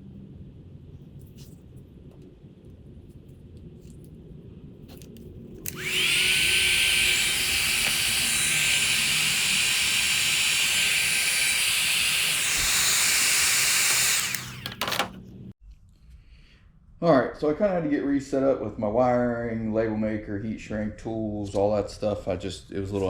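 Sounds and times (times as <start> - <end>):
heat gun fan blowing: 5.0 - 15.4.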